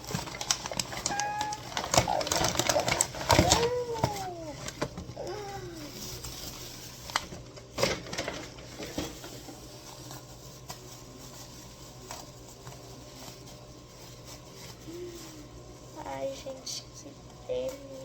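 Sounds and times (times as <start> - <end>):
food packaging clicks and knocks: 0.0 - 5.1, 7.1 - 9.4.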